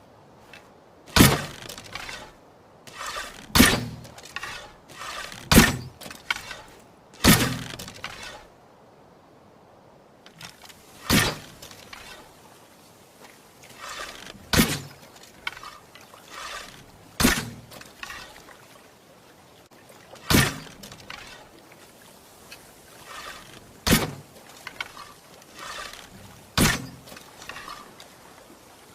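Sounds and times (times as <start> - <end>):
faint rustle: 0.0 - 28.9
bow string and arrow snapping: 0.5 - 8.5, 10.3 - 12.3, 13.6 - 18.4, 20.2 - 21.5, 22.5 - 28.1.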